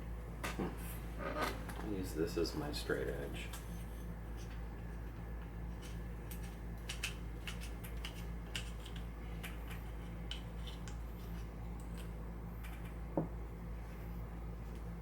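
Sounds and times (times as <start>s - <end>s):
steady low hum: 0.0s - 15.0s
small tools clicking and tapping: 5.8s - 13.0s.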